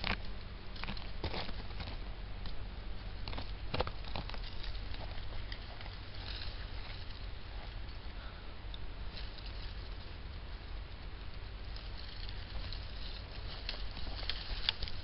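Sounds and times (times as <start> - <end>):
dry leaves crackling and rustling: 0.0 - 2.1, 2.9 - 8.2, 9.0 - 15.0
twigs snapping: 11.8 - 15.0.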